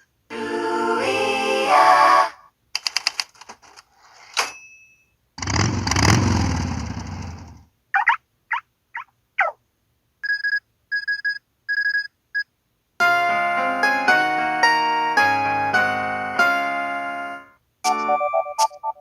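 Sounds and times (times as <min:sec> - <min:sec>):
piano-like melody: 0:13.0 - 0:19.0.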